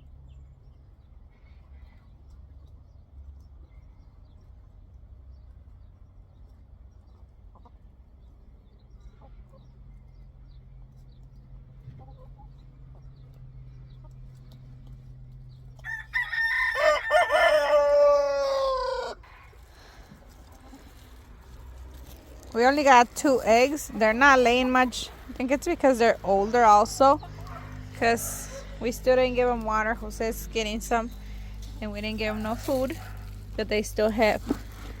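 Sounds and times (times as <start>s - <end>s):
faint low hum: 0.0s - 35.0s
rooster crowing: 15.8s - 19.4s.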